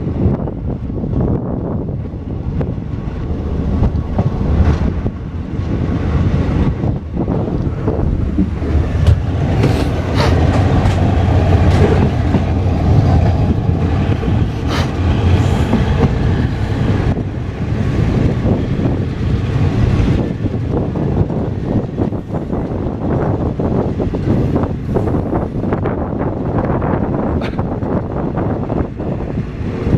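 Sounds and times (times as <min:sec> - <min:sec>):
train carriages rumbling past: 0:00.0 - 0:29.9
wheel clacks over rail joints: 0:02.6 - 0:17.3, 0:27.3 - 0:28.1.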